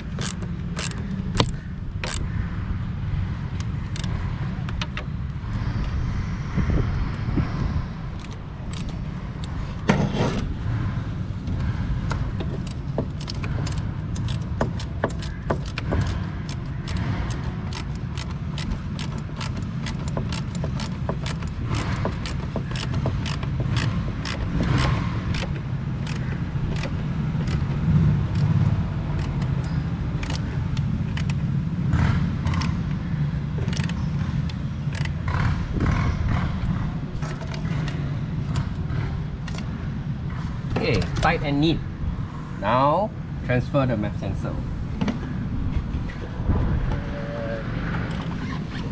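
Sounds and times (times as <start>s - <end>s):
hand tools clicking and scraping: 0.0s - 2.3s, 12.0s - 33.0s, 33.6s - 41.4s
steady low rumble: 23.2s - 48.9s.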